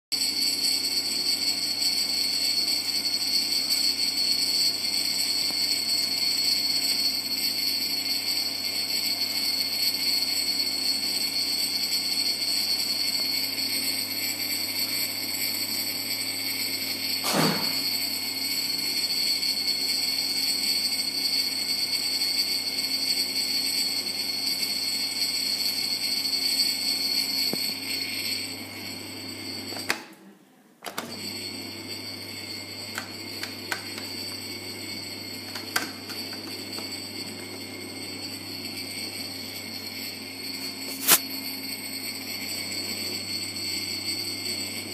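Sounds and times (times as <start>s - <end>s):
dishwasher humming: 15.3s - 19.5s, 27.2s - 30.2s, 30.8s - 44.9s.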